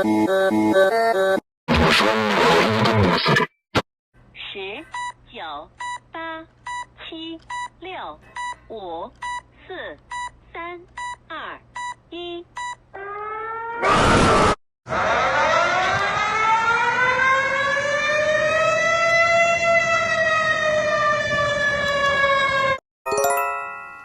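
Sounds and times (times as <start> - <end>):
emergency siren wailing: 13.0 - 22.8.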